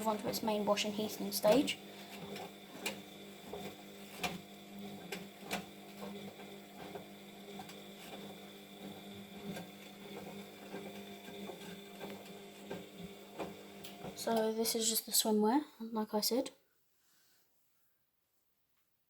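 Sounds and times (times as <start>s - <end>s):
washing machine drum humming: 0.0s - 14.9s.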